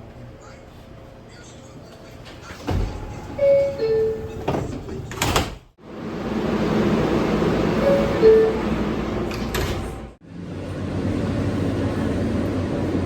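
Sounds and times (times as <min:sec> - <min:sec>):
train and station noise: 0:00.0 - 0:13.0
train doors closing clatter: 0:02.1 - 0:05.7, 0:07.7 - 0:10.1
two-note door chime: 0:03.4 - 0:04.4, 0:07.8 - 0:08.7.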